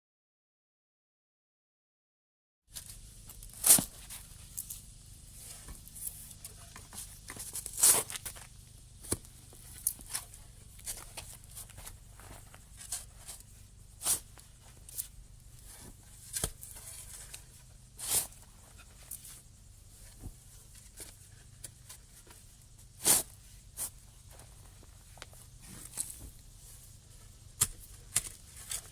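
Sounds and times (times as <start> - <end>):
tool digging into soil: 3.5 - 4.8, 5.4 - 12.0, 12.7 - 19.4, 22.9 - 24.0, 25.2 - 28.9.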